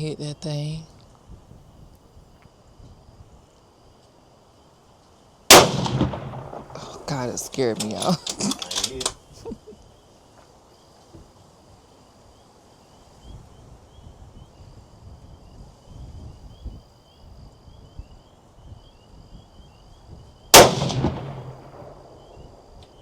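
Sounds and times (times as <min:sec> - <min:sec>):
gunshot with ringing tail: 0:05.5 - 0:07.2, 0:20.6 - 0:22.4.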